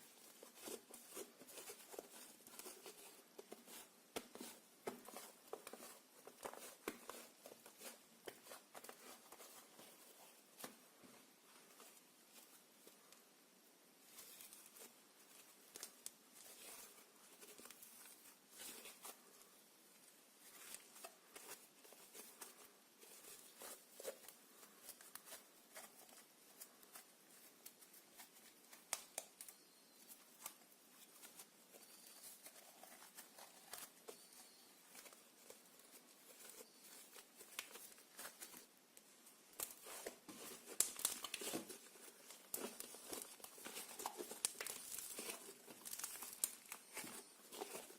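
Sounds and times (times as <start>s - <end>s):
wet slime crackles: 32.2s - 47.9s.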